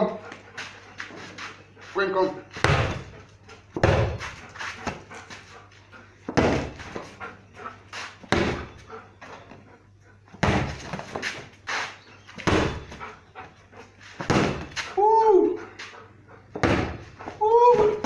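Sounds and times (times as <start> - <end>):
heavy thuds and knocks: 2.6 - 3.2, 3.8 - 5.0, 6.3 - 7.0, 14.2 - 14.8.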